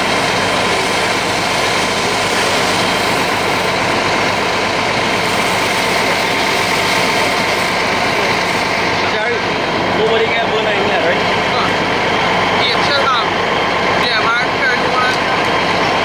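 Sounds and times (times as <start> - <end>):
heavy engine idling: 0.0 - 16.0.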